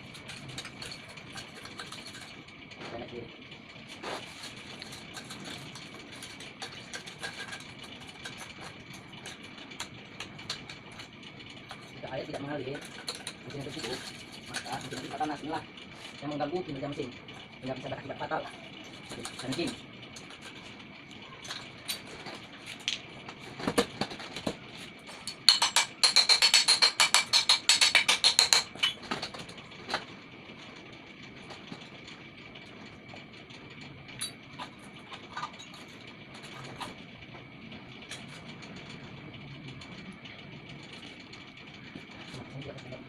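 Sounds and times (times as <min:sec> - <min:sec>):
metal parts clicking and knocking: 0:00.0 - 0:02.5, 0:03.9 - 0:16.2, 0:18.4 - 0:30.2, 0:34.1 - 0:37.0.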